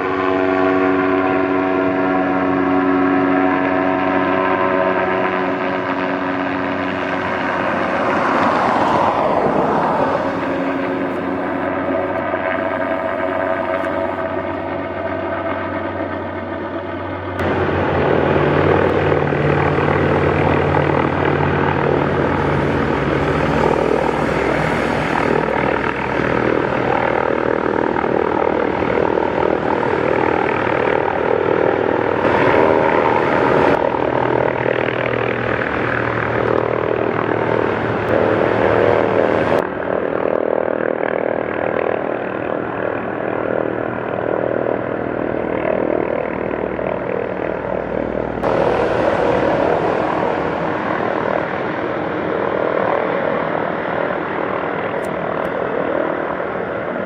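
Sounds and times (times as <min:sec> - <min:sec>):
helicopter engine and rotors: 0:00.0 - 0:57.0.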